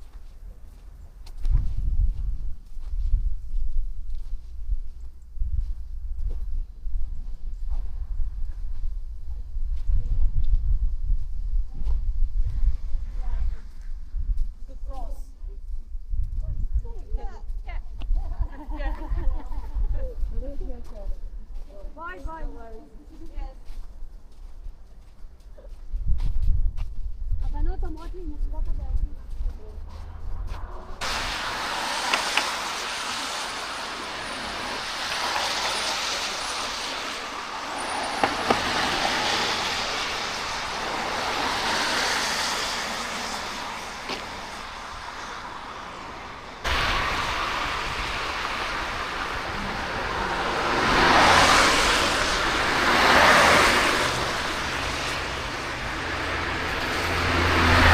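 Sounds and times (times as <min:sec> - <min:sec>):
low rumble of traffic: 0:00.0 - 0:57.9
cars passing: 0:29.0 - 0:57.9.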